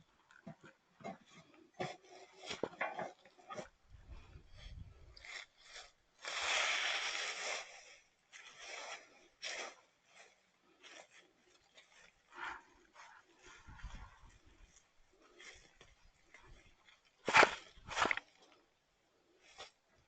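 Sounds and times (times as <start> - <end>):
scraping and rubbing noises: 0.4 - 18.5.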